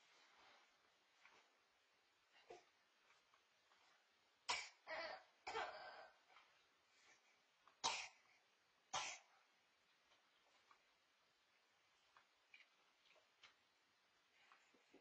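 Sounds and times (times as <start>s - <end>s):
person coughing: 4.5s - 6.2s.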